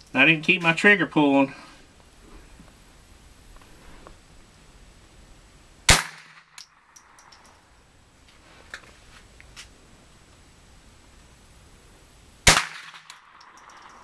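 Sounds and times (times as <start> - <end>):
rifle shot: 5.9 - 6.6, 12.4 - 14.0.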